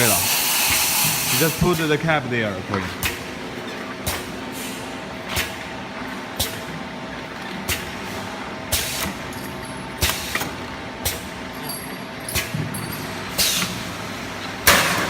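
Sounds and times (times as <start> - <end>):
filling machine humming: 0.0 - 15.0.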